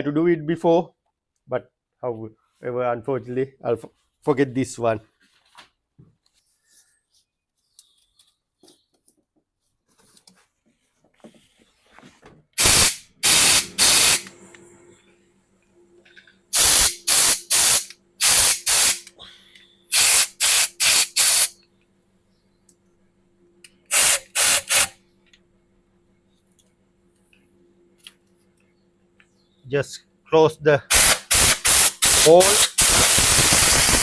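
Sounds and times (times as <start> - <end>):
compressed air blow gun hissing: 12.6 - 14.3, 16.5 - 19.1, 19.9 - 21.5, 23.9 - 24.9, 30.9 - 34.0.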